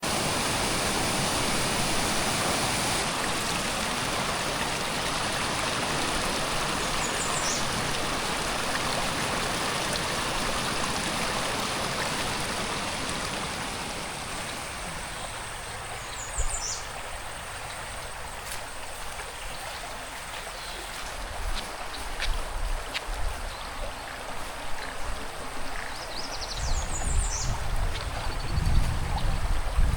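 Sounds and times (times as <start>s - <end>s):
stream flowing over rocks: 0.0s - 29.9s.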